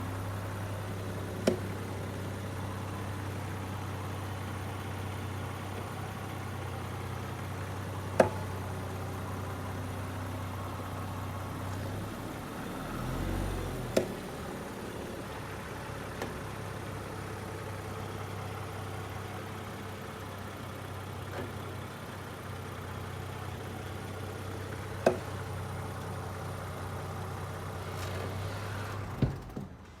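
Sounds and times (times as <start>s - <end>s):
vehicle engine at low speed: 0.0s - 30.0s
sharp pops from wheels: 0.1s - 12.0s, 13.8s - 15.4s.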